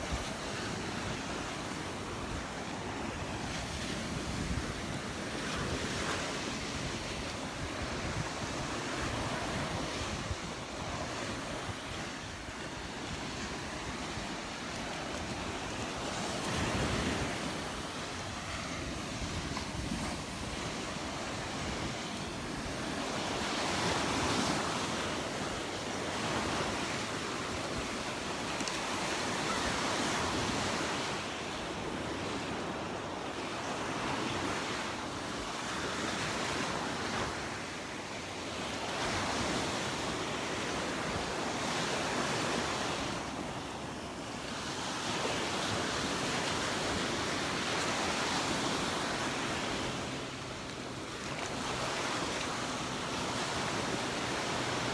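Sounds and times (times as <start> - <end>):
wind buffeting microphone: 0.0 - 33.1
surf breaking on beach: 0.0 - 54.9.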